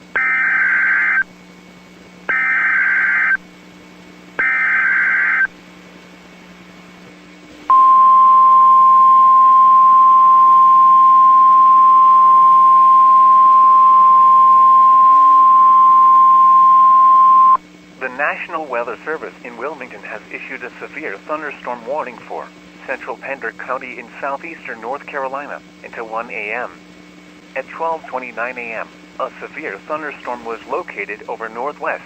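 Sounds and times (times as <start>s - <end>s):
steady warning alarm tone: 0.2s - 1.3s, 2.3s - 3.4s, 4.4s - 5.6s, 7.7s - 17.6s
digital data bursts: 2.3s - 3.4s.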